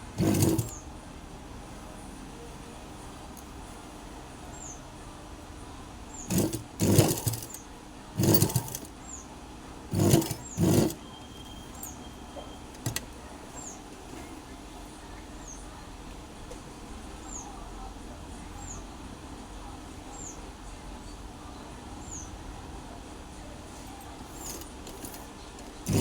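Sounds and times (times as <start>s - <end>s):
sewing machine stitching: 0.0s - 0.8s, 6.3s - 7.6s, 8.2s - 8.9s, 9.9s - 12.0s, 12.7s - 13.2s, 24.2s - 26.0s.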